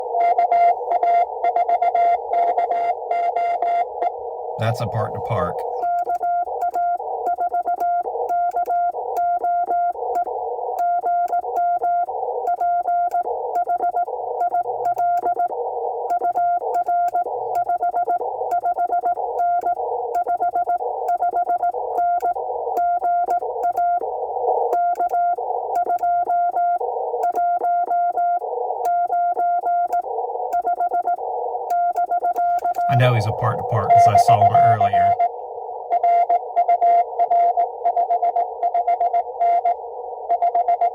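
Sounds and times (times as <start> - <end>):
morse code tone: 4.6 - 5.9, 32.4 - 35.2.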